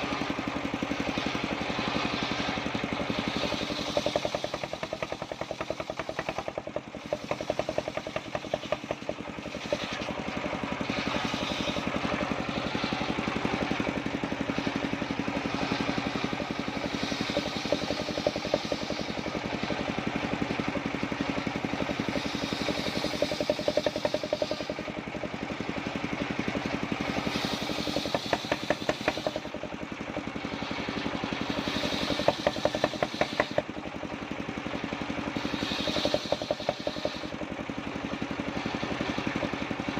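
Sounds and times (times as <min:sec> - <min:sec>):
engine-driven circular saw running: 0:00.0 - 0:39.9
saw cutting wood: 0:00.0 - 0:39.9.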